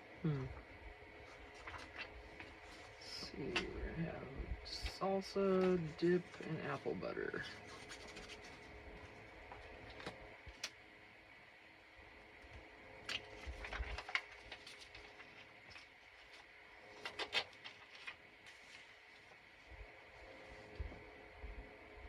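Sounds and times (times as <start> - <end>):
paper rustling: 1.2 - 3.8, 4.7 - 10.7, 13.0 - 20.9.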